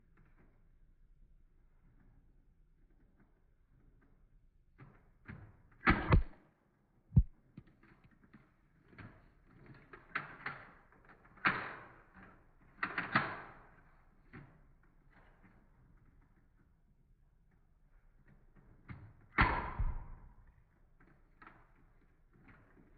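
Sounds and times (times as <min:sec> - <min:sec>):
foam dart blaster clacks and thuds: 0:04.9 - 0:06.4, 0:18.8 - 0:20.6.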